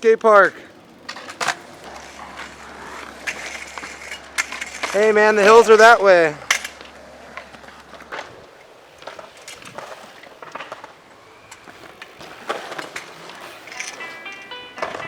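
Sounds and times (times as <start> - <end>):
wheels rolling over concrete: 0.0 - 15.0
skateboard clacks and scrapes: 0.8 - 15.0.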